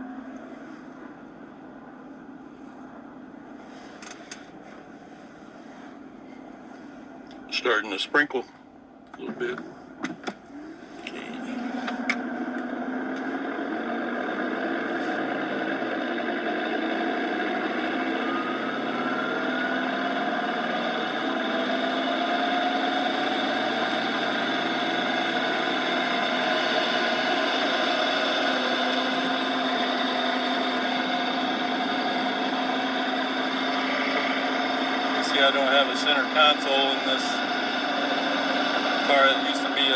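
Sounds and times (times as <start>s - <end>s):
car driveshaft whine: 8.6s - 39.9s.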